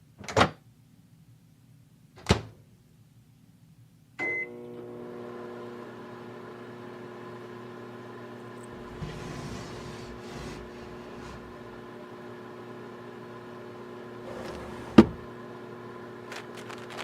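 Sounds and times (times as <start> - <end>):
microwave beep: 4.2 - 4.7
microwave oven humming: 4.2 - 17.0.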